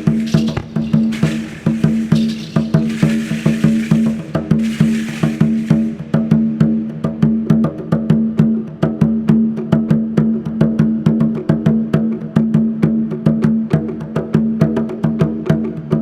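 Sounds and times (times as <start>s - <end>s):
wooden percussion strikes: 0.0s - 7.8s.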